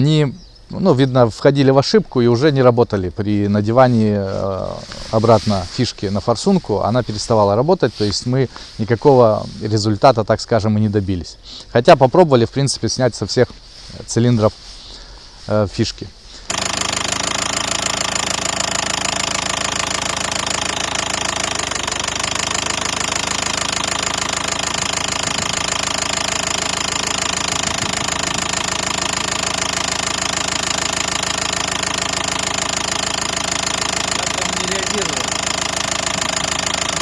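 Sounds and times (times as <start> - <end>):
diesel engine running: 16.5 - 37.0
engine knocking: 16.5 - 37.0.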